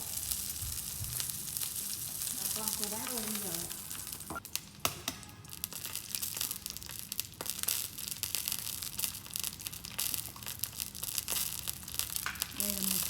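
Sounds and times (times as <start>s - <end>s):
food frying in hot oil: 0.0s - 4.9s, 5.5s - 13.0s.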